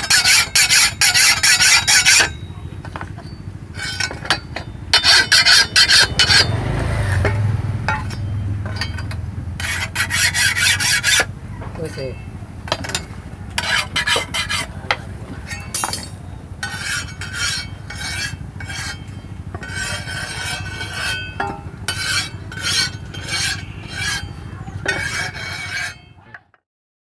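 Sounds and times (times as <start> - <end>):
knife blade being filed: 0.0 - 2.5, 3.8 - 7.3, 9.6 - 12.1, 13.6 - 26.1
steady low hum: 0.0 - 25.7.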